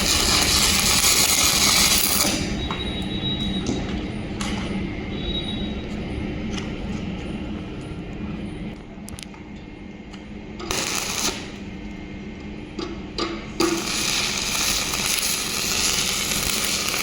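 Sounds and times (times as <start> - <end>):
welding arc crackling: 0.0 - 3.0, 10.6 - 11.8, 13.6 - 17.0
welding machine hum: 0.0 - 6.2, 10.1 - 17.0.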